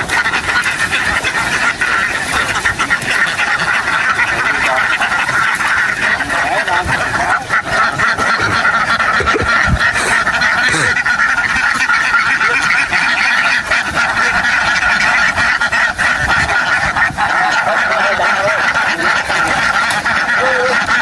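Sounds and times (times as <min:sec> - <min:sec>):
flock of ducks quacking: 0:00.0 - 0:21.0.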